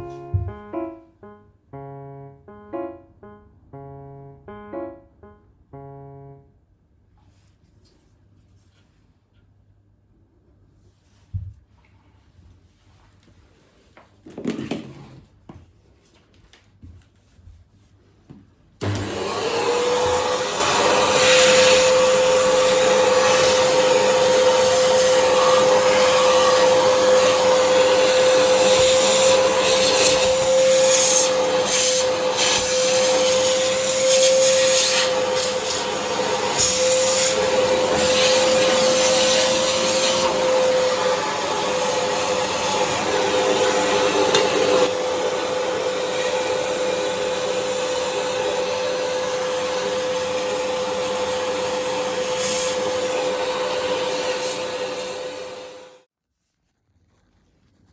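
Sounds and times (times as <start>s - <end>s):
vacuum cleaner running: 18.8s - 56.1s.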